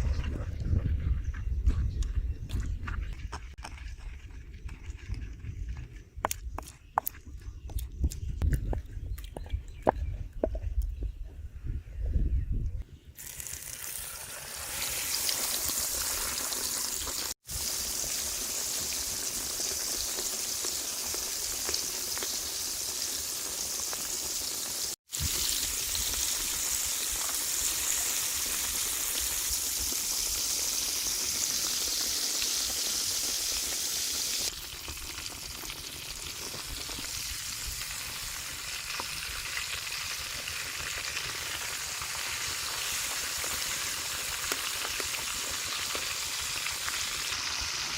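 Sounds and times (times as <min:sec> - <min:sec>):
squid sizzling in hot oil: 0:13.2 - 0:47.9.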